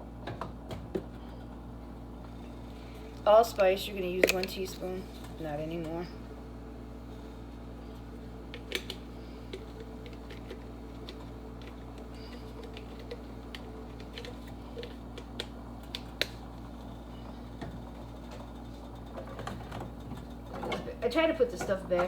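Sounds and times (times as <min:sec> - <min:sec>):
spice containers clicking and tapping: 0:08.5 - 0:16.4.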